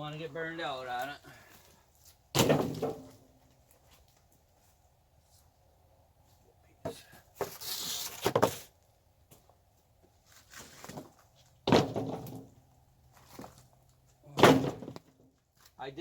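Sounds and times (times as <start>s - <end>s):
knocks and thumps: 10.9s - 12.5s, 14.3s - 15.1s.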